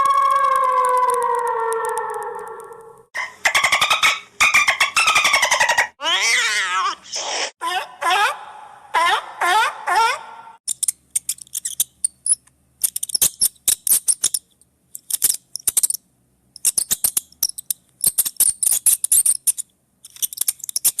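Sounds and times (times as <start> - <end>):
small animal high-pitched squeaks: 10.7 - 16.0, 16.6 - 21.0.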